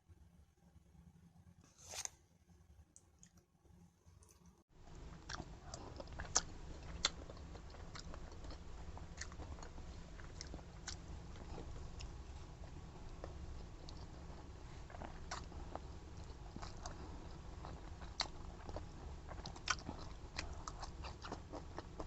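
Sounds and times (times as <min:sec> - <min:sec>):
person chewing and biting: 0:05.2 - 0:12.1, 0:14.9 - 0:22.0.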